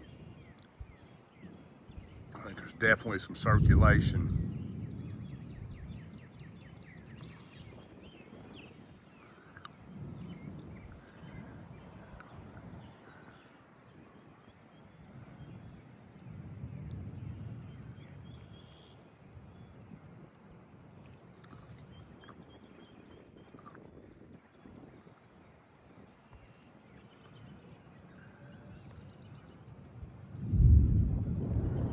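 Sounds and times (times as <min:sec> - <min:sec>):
birds chirping: 0:00.0 - 0:20.0, 0:30.4 - 0:31.9
gusty wind rumbling: 0:00.0 - 0:21.3, 0:28.7 - 0:31.9.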